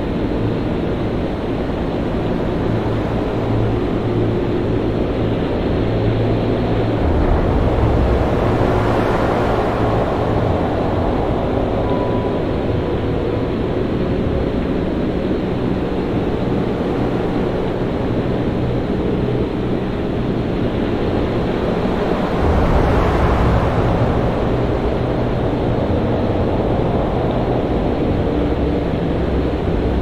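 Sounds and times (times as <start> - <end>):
deep rumble: 0.0 - 30.0
wind: 0.0 - 30.0
breaking waves: 6.3 - 14.0, 20.8 - 30.0.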